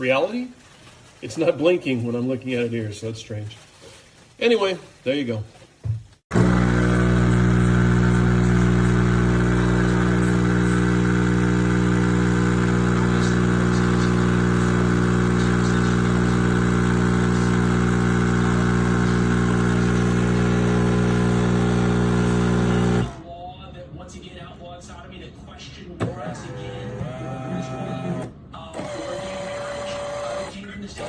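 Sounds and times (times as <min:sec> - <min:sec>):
espresso machine humming: 0:06.3 - 0:23.2, 0:26.0 - 0:31.0.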